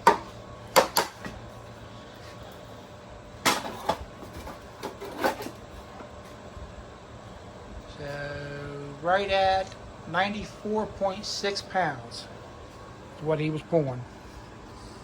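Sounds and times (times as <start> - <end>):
bricks and metal clattering on sled: 3.5 - 5.6.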